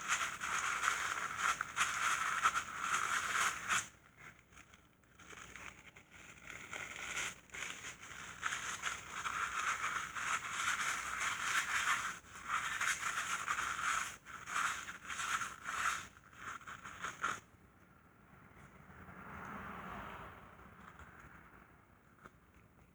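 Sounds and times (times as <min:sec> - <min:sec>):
cloth rag rubbing on metal: 0:00.0 - 0:03.9.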